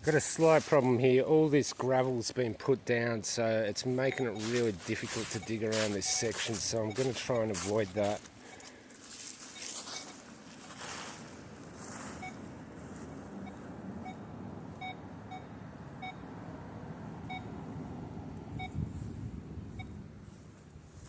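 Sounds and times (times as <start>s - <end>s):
metal detector beeps: 3.9s - 10.3s, 12.1s - 12.5s, 13.4s - 16.2s, 17.2s - 17.5s, 18.5s - 18.9s, 19.8s - 20.0s.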